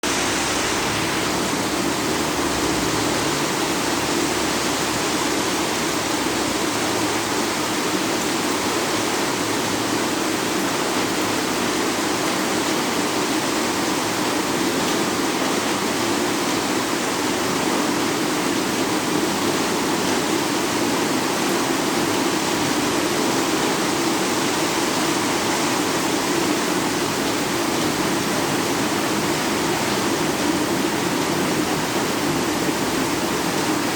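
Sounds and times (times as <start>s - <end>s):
heavy rain pouring: 0.0s - 33.9s.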